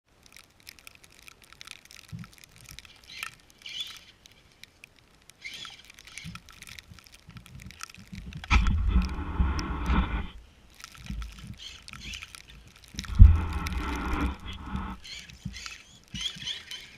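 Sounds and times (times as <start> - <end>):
light crackling in snow: 0.1 - 16.9
deep rumble: 8.5 - 10.4, 13.0 - 15.0.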